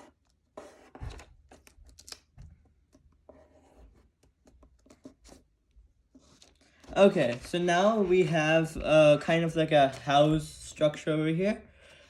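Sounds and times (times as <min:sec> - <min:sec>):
paper rustling and creasing: 0:00.6 - 0:03.2, 0:06.1 - 0:10.9.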